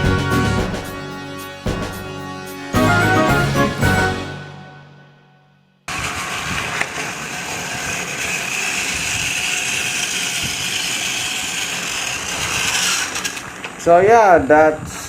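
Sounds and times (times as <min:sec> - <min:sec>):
toy train motor whirring: 0:07.3 - 0:13.8.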